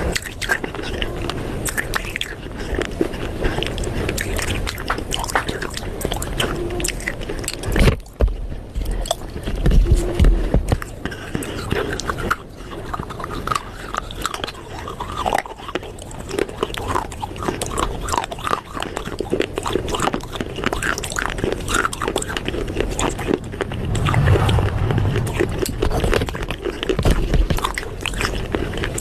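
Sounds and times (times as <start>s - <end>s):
clay crunching between teeth: 10.7s - 23.4s.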